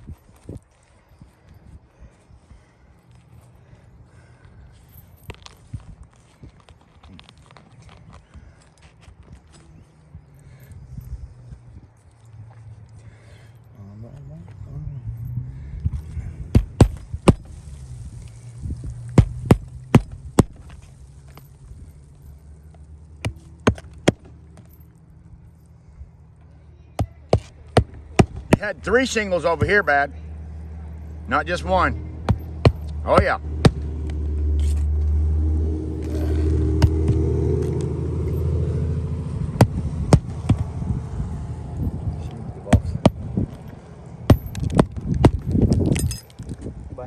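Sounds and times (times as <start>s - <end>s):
low engine rumble: 0.0s - 47.0s
steady low hum: 9.6s - 47.0s
hammer striking roofing nails: 16.5s - 17.5s.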